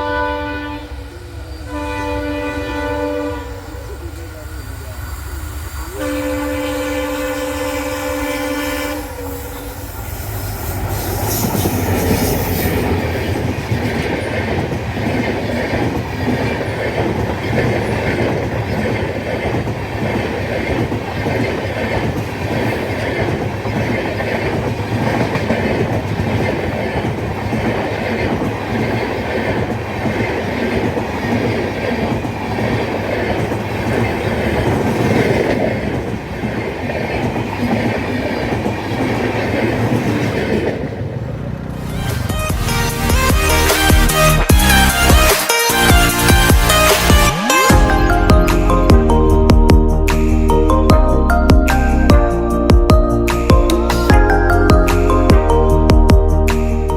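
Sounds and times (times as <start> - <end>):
locomotive air horn blast: 0.0 - 1.1, 1.7 - 3.9, 5.9 - 13.2, 41.9 - 48.8
train wheels clattering over rails: 9.8 - 42.0.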